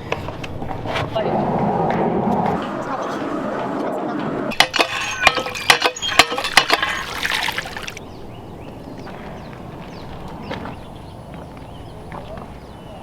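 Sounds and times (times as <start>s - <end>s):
knocks and clinks on metal: 4.5s - 7.5s.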